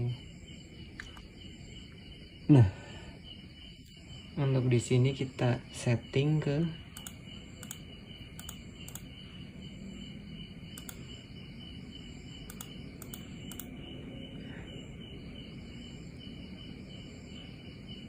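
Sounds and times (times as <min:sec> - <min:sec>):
insects chirping: 0:00.0 - 0:18.0
faint light clicks: 0:01.0 - 0:01.3, 0:07.0 - 0:09.1, 0:10.8 - 0:11.1, 0:12.5 - 0:13.7.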